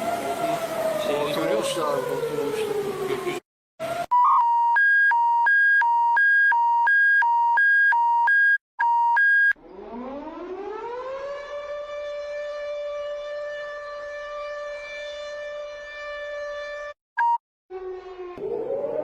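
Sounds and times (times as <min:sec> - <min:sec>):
siren winding up: 0:04.0 - 0:11.6, 0:17.2 - 0:19.0
buzzy two-tone alert alarm: 0:04.1 - 0:10.3.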